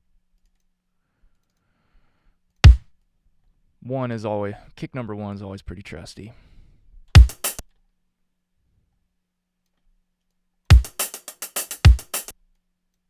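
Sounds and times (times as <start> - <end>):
kick drum: 2.6 - 2.9, 7.2 - 7.5, 10.7 - 11.0, 11.8 - 12.2
hi-hat loop: 7.2 - 7.6, 10.7 - 12.3.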